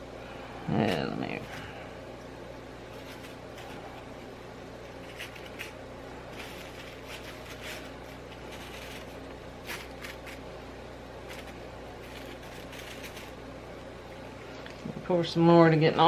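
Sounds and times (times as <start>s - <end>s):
steady low hum: 0.0s - 16.0s
craft materials scraping and rustling: 2.9s - 4.2s, 4.8s - 10.5s, 11.2s - 13.4s.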